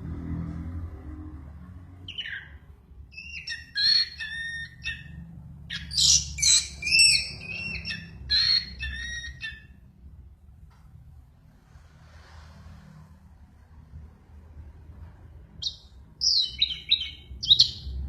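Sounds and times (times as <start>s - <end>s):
songbird singing: 2.1s - 9.8s, 15.6s - 18.0s.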